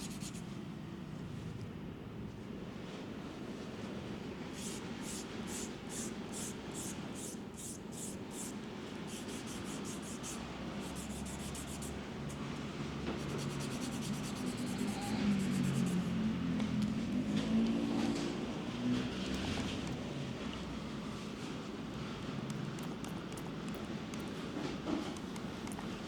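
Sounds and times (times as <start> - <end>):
grooming tool rubbing and scraping: 0.0 - 0.4, 4.6 - 12.4, 13.1 - 16.2.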